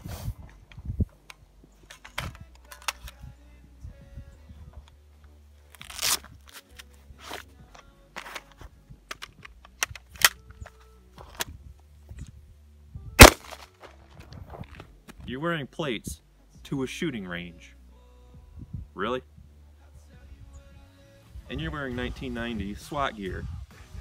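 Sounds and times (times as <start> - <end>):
background music: 0.0 - 24.0
gunshots: 13.2 - 13.6.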